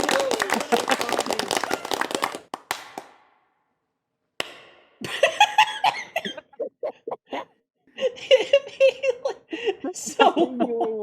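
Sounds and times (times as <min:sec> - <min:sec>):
reverberant applause: 0:00.0 - 0:03.3
single reverberant clap: 0:00.0 - 0:03.5
voice: 0:09.8 - 0:11.0.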